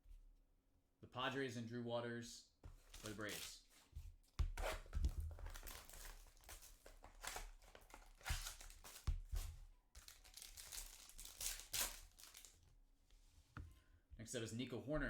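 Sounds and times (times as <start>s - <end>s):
cards being handled: 2.6s - 12.6s
wrappers crinkling and tearing: 2.8s - 3.7s, 4.6s - 12.6s.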